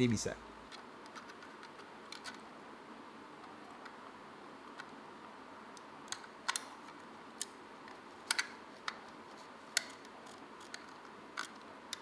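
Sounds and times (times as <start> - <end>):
plastic mouse parts clicking: 8.2 - 9.0.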